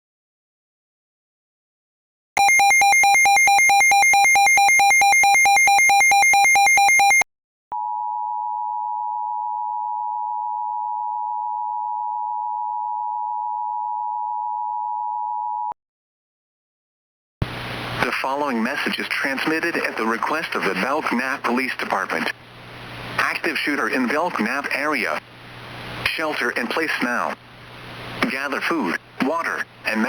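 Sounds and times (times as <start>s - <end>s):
steady two-tone attention signal: 2.4s - 7.2s
warbling electronic alert tone: 2.4s - 7.2s.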